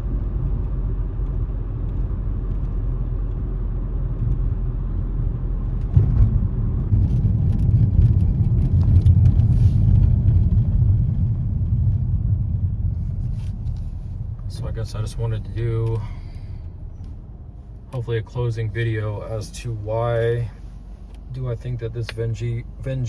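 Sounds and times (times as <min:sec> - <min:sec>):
car engine and road noise: 0:00.0 - 0:23.0.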